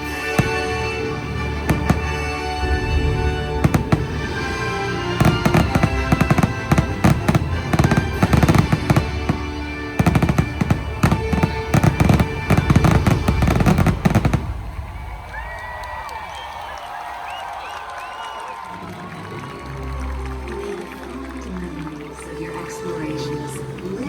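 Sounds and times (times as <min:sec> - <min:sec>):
fireworks bursts: 0:00.0 - 0:17.9
orchestral music: 0:00.0 - 0:24.0.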